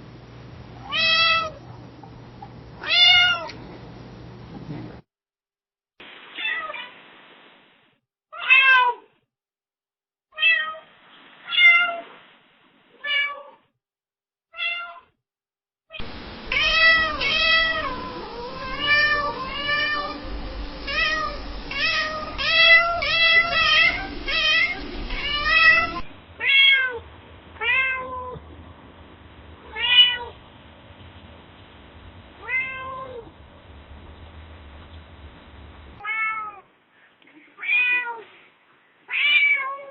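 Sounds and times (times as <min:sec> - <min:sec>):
low steady hum: 0:00.0 - 0:05.0, 0:16.0 - 0:36.0
cats meowing: 0:02.8 - 0:03.6, 0:16.5 - 0:27.0, 0:27.6 - 0:28.4, 0:29.7 - 0:30.4, 0:32.4 - 0:33.3.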